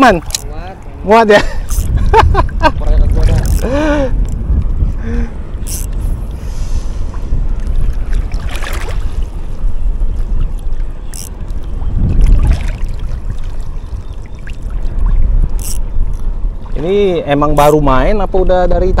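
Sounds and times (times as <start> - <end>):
wind buffeting microphone: 0.0 - 19.0
water swishing: 5.7 - 17.4.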